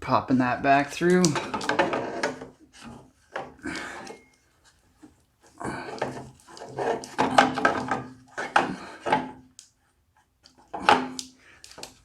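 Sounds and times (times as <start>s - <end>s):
hard plastic scraping and knocking: 1.2s - 4.1s, 5.8s - 9.4s.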